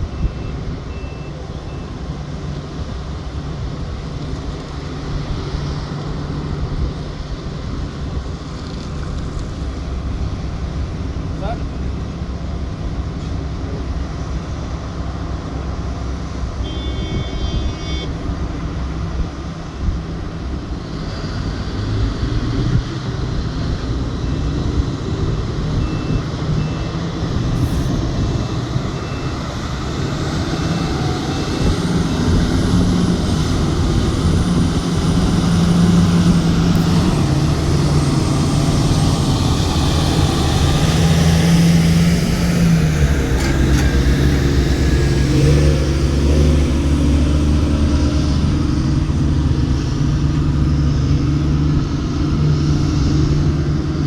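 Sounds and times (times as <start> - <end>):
heavy diesel engine drone: 0.0 - 54.0
high beep: 0.1 - 2.0, 25.8 - 27.0.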